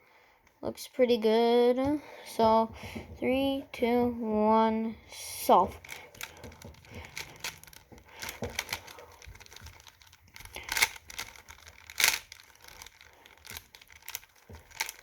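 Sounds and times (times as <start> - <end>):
speed cube clicking: 5.7 - 15.0.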